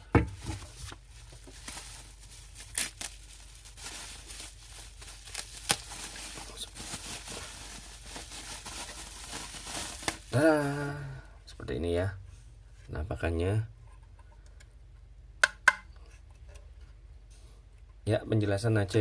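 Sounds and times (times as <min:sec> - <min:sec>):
packaging tearing and crinkling: 0:00.4 - 0:10.4.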